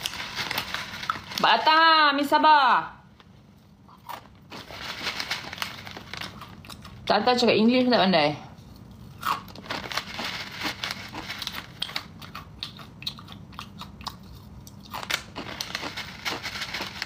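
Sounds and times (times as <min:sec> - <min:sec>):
crunchy food being chewed: 0:03.9 - 0:07.1, 0:08.6 - 0:17.0.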